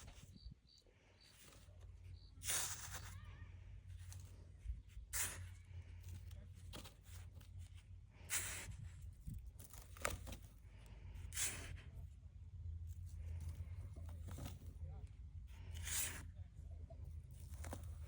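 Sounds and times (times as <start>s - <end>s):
rustling of sand: 0.0s - 12.2s
steady low hum: 0.0s - 18.0s
sand being scraped: 1.2s - 9.1s, 11.2s - 11.9s, 15.6s - 16.4s.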